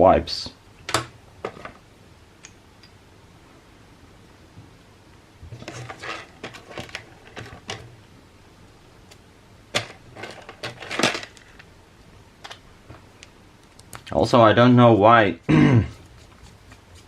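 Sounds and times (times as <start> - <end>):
metal parts clicking and rattling: 5.6 - 7.9, 9.7 - 11.7.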